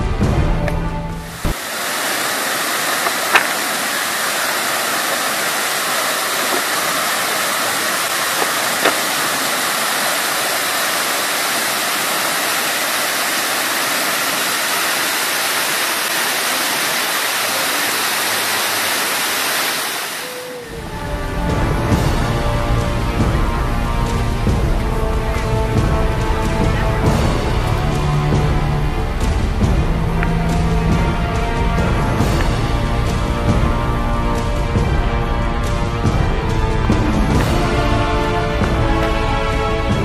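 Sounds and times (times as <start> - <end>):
waterfall rushing: 0.8 - 40.0.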